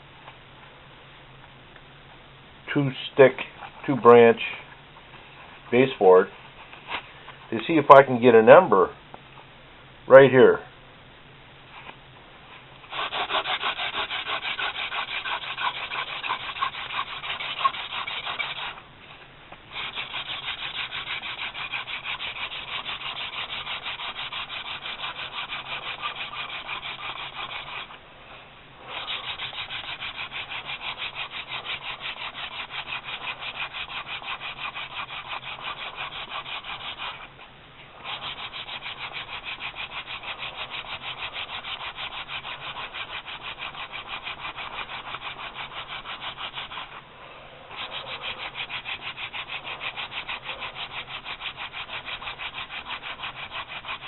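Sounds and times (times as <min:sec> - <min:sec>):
wood-on-wood rubbing: 0:12.9 - 0:18.8, 0:19.7 - 0:28.0, 0:28.8 - 0:37.4, 0:38.0 - 0:47.0, 0:47.7 - 0:54.0.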